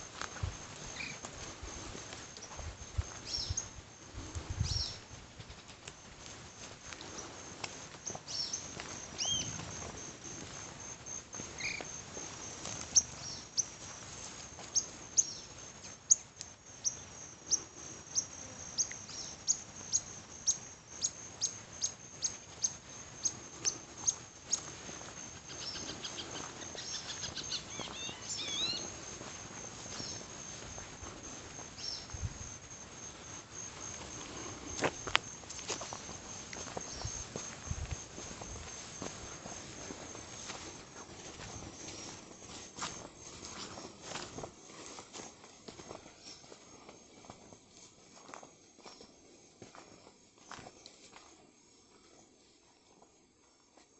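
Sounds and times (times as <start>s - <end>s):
high-pitched insect trilling: 0.1s - 1.3s, 2.3s - 7.0s, 8.0s - 44.3s
birds chirping: 3.2s - 3.7s, 8.0s - 9.6s, 11.6s - 12.0s, 25.4s - 29.1s, 29.9s - 30.3s, 31.7s - 32.2s
twittering bird calls: 3.2s - 3.7s, 8.3s - 9.6s, 25.5s - 28.9s.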